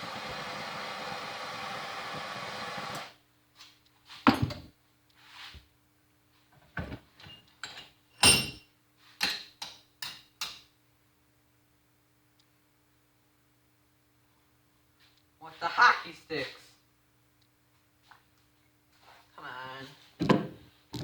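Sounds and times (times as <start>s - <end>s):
metal tools knocking on work surface: 7.6s - 8.6s.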